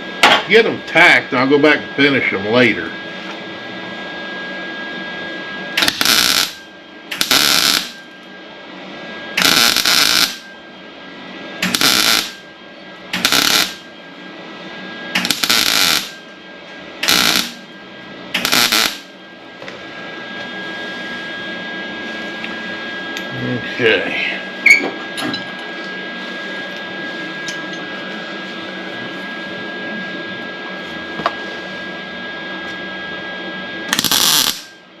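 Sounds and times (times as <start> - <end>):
welder arc crackling: 5.8 - 8.0, 9.4 - 10.4, 11.6 - 12.4, 13.2 - 13.8, 15.2 - 16.2, 17.0 - 17.6, 18.4 - 19.1, 33.9 - 34.7.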